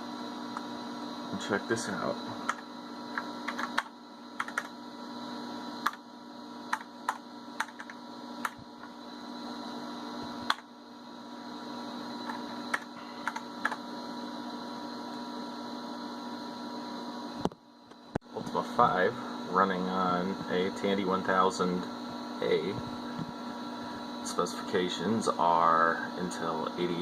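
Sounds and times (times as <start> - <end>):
electrical hum with steady tones: 0.0 - 27.0
keyboard keys clicking: 3.5 - 4.7.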